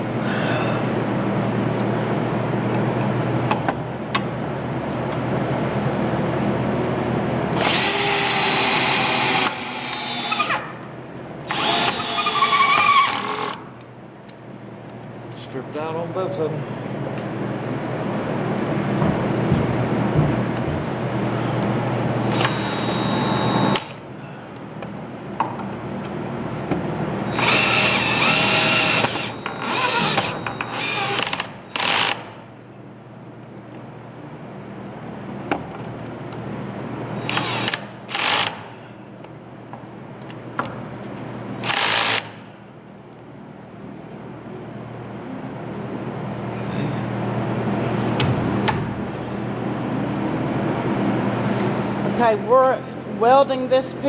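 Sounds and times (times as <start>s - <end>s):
steady low hum: 0.0s - 54.0s
power tool whining: 7.5s - 10.7s, 11.4s - 13.7s, 27.3s - 32.3s, 37.2s - 38.6s.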